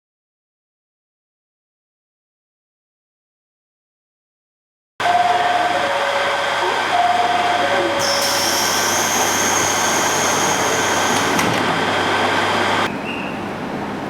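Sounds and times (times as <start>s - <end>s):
train noise: 5.0s - 14.0s.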